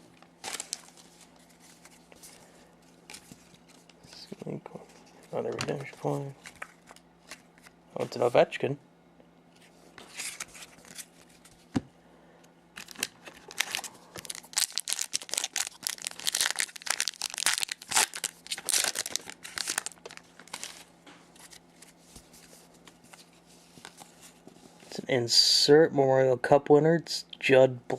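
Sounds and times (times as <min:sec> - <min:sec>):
foil wrapper crackling: 0:12.8 - 0:20.9.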